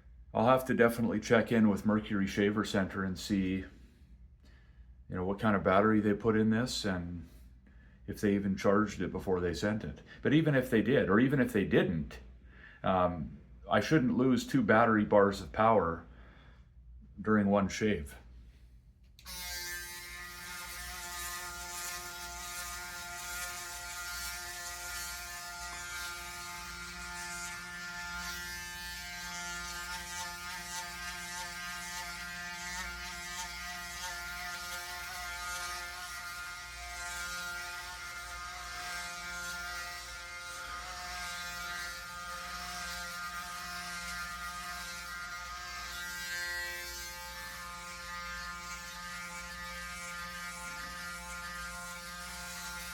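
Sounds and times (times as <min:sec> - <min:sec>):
electric shaver buzzing: 0:19.2 - 0:52.9.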